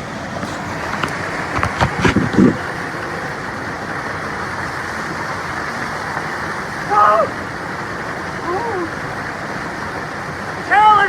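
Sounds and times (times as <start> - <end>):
waterfall and creek water rushing: 0.0 - 11.0
short knocks and thumps: 0.4 - 2.6.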